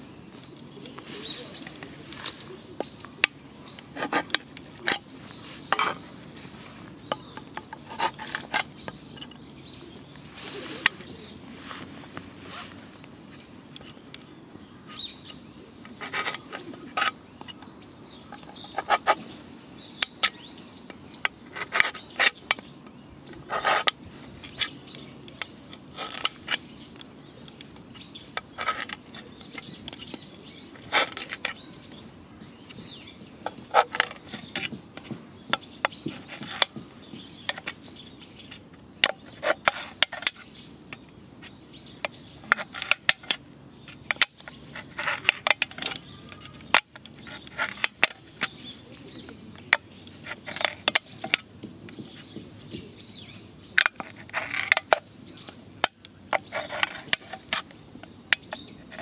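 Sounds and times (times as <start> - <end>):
birds chirping: 0.0 - 59.0
aluminium can handled by hand: 1.6 - 9.7, 15.8 - 19.3, 23.3 - 32.0, 32.7 - 52.8, 53.7 - 59.0.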